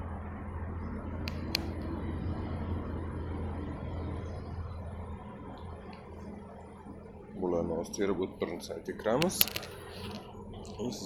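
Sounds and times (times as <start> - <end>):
low background rumble and hum: 0.0 - 11.0
sharp clicks: 1.2 - 1.8, 9.1 - 10.8.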